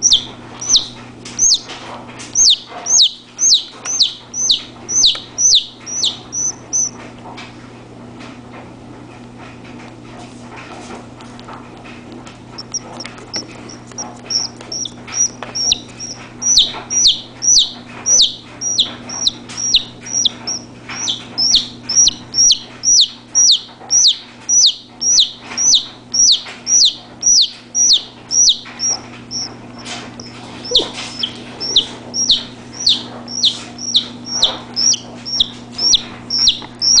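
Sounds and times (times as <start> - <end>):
chick peeping: 0.0 - 7.0, 12.6 - 37.0.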